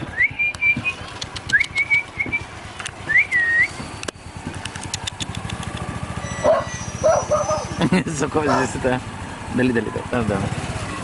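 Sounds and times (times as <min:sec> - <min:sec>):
person whistling rising notes: 0:00.1 - 0:02.5, 0:03.1 - 0:03.8
short clicks: 0:00.5 - 0:02.1, 0:04.0 - 0:05.9.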